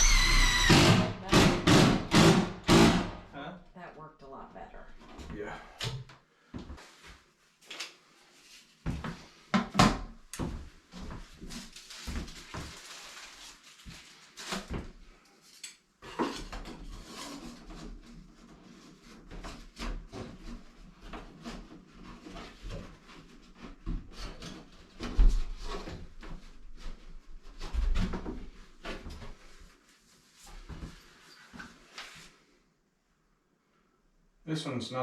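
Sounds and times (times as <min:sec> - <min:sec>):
knocks and taps on bathroom fixtures: 0:08.9 - 0:10.7.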